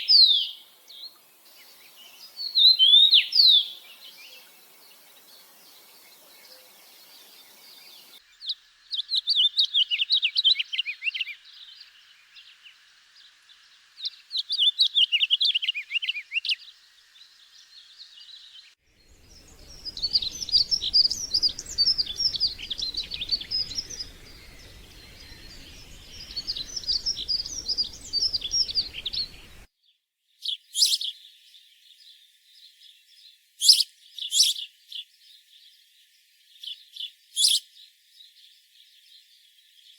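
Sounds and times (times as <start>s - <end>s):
songbirds twittering: 0.0s - 29.7s, 30.4s - 39.9s
short sharp bird calls: 19.2s - 29.7s, 30.5s - 31.1s, 33.6s - 34.7s, 37.4s - 37.7s.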